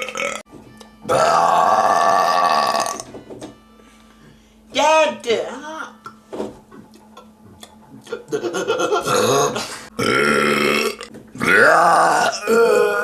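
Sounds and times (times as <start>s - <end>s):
person burping loudly: 0.0s - 0.4s, 1.1s - 3.1s, 8.0s - 13.0s.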